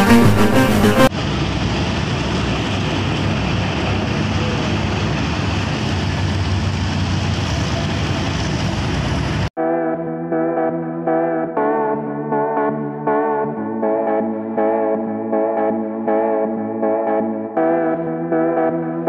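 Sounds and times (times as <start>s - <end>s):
music: 0.0s - 1.1s, 9.6s - 19.0s.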